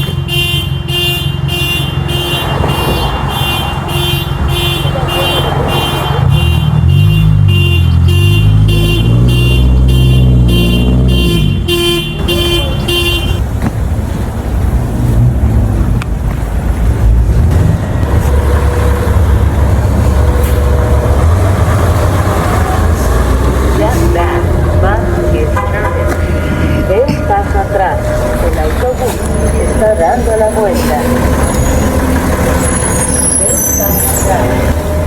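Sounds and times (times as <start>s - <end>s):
alarm beeping: 0.0s - 13.4s, 23.8s - 35.0s
engine and traffic rumble: 0.0s - 35.0s.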